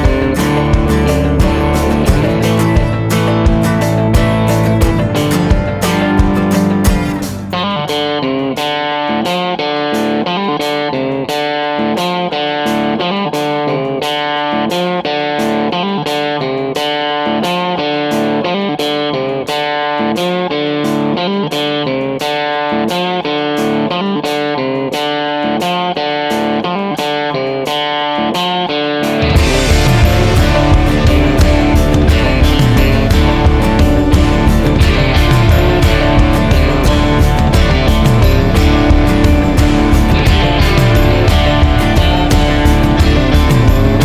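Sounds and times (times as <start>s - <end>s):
electric guitar music with beat: 0.0s - 44.0s.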